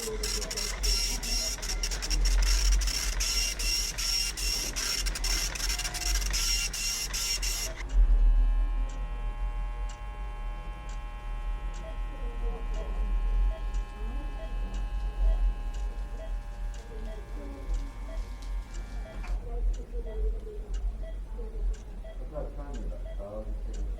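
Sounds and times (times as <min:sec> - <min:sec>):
clock ticking: 0:00.0 - 0:08.0, 0:10.8 - 0:11.0, 0:11.7 - 0:12.0, 0:13.5 - 0:23.9
rapid irregular clicking: 0:00.0 - 0:08.0
hum of equipment tones: 0:00.0 - 0:23.9
low rumble: 0:07.9 - 0:09.5.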